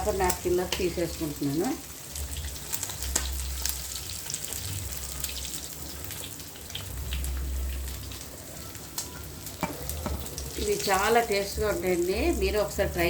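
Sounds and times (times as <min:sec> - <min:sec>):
fish sizzling in hot oil: 0:00.0 - 0:13.0.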